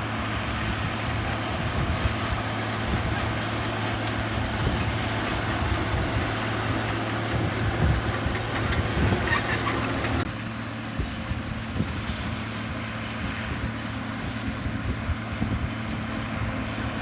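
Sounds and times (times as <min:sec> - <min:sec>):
high squeaks: 0:00.0 - 0:10.3
bulldozer diesel engine running: 0:00.0 - 0:17.0.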